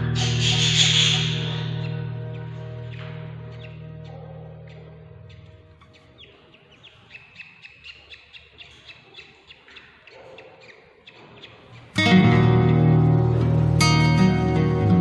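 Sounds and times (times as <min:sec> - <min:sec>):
background music: 0:00.0 - 0:06.6, 0:11.8 - 0:15.0
budgies chirping: 0:00.0 - 0:14.3.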